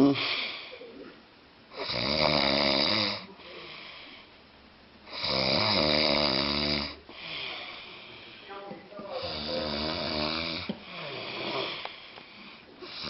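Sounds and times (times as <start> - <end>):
man snoring: 1.7 - 4.2, 5.1 - 7.8, 9.2 - 13.0
soft breath: 3.3 - 4.4, 7.1 - 9.3, 10.7 - 13.0.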